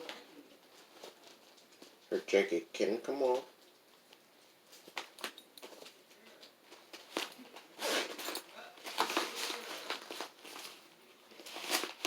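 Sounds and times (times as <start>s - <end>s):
cloth and plastic rustling: 0.0s - 2.2s, 3.2s - 12.0s.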